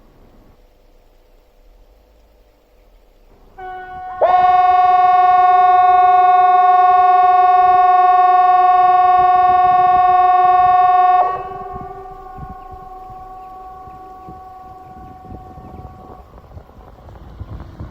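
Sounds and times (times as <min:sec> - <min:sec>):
outdoor warning siren steady tone: 0:03.5 - 0:17.2.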